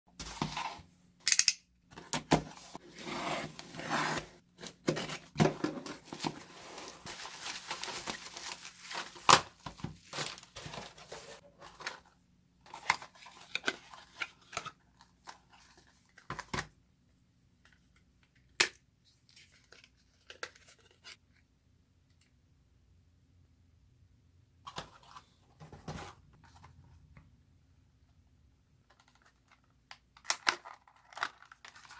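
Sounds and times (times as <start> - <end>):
packaging tearing and crinkling: 6.8 - 11.4.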